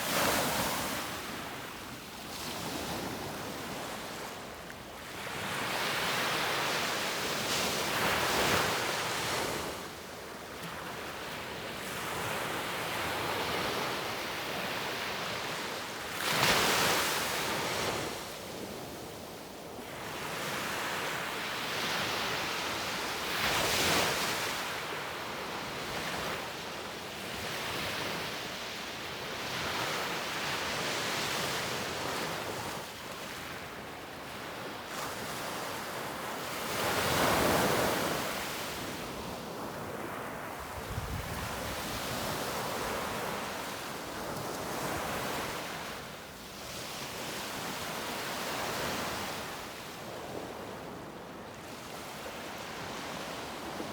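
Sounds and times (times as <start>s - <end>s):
wind on microphone: 40.5s - 43.0s.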